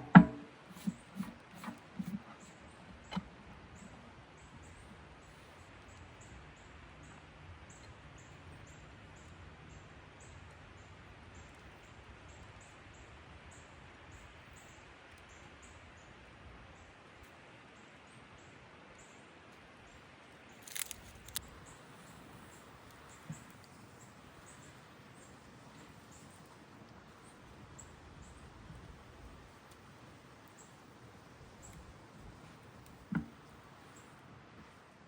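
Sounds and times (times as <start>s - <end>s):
sharp knocks: 0.0s - 1.0s.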